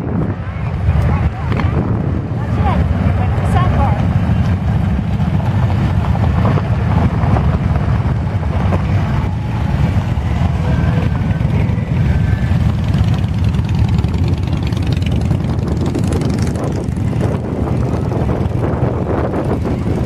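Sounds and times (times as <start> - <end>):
motorcycle engines rumbling: 0.0 - 20.0.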